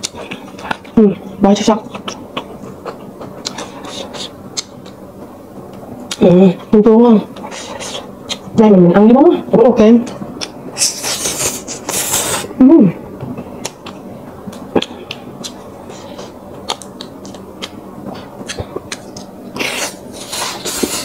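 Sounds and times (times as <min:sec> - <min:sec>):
chewing and mouth clicks: 0:00.0 - 0:01.0, 0:01.9 - 0:05.0, 0:13.6 - 0:20.0.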